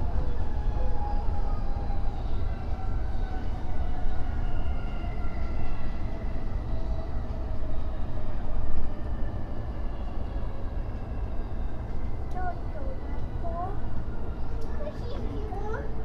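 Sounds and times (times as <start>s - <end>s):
train rumbling on rails: 0.0s - 16.0s.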